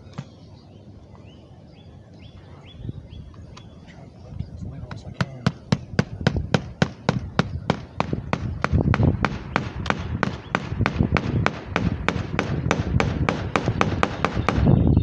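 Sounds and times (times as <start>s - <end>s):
rapid hammer strikes: 5.2s - 14.8s.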